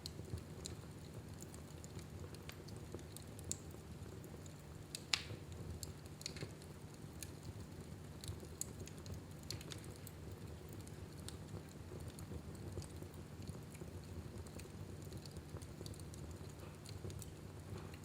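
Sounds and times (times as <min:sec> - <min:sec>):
fire crackling in a fireplace: 0:00.0 - 0:18.0.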